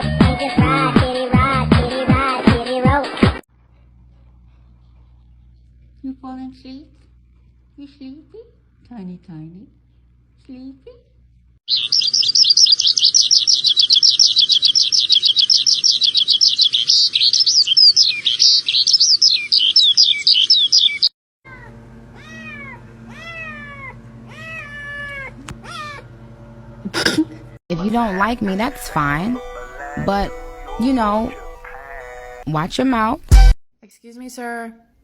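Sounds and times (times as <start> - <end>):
high-pitched chirping chatter: 11.7 - 24.8
kitten mewing: 21.5 - 26.1.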